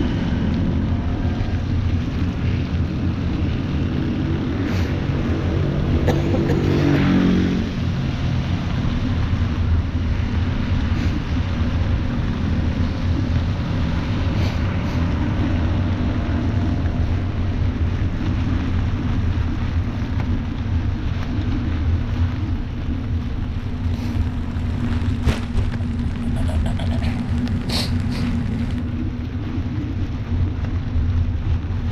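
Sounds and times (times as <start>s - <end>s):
vehicle passing: 0.0s - 9.2s
rain hiss: 0.0s - 31.9s
street traffic rumble: 0.0s - 31.9s.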